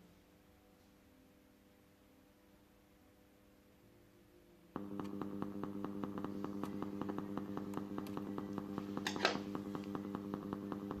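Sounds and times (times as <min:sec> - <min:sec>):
speaker mains hum: 0:01.6 - 0:11.0
loud crackle: 0:04.8 - 0:11.0
speaker popping: 0:04.8 - 0:11.0.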